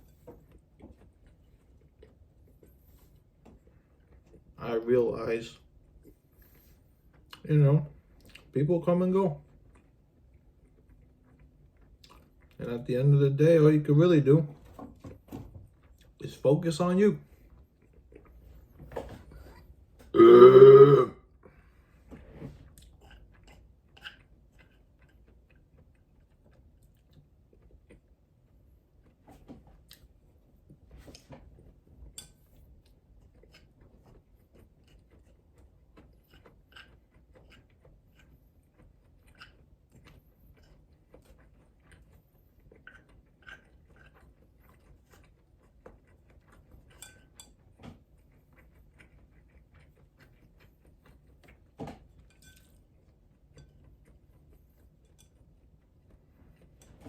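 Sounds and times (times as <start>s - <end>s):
loud drawn-out burp: 20.1s - 21.2s.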